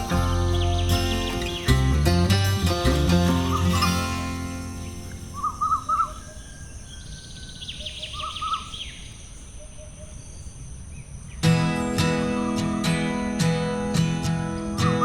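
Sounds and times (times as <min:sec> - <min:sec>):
strummed guitar music: 0:00.0 - 0:06.3, 0:11.4 - 0:15.0
small birds chirping: 0:00.0 - 0:15.0.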